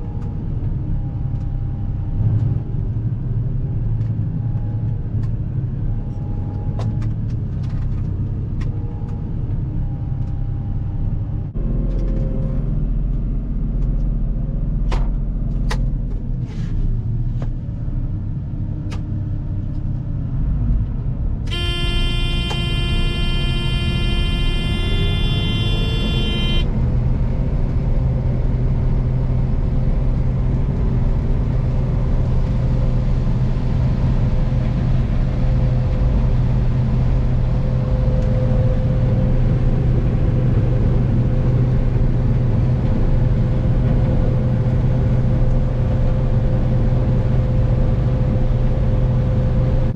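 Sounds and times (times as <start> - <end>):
heavy vehicle engine rumbling: 0.0 - 49.9
loud steady tone: 21.5 - 26.8.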